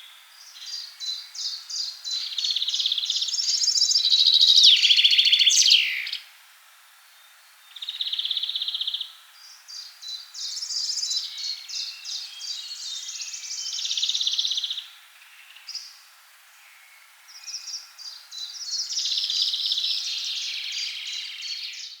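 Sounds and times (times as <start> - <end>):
songbird trilling: 1.4 - 6.2.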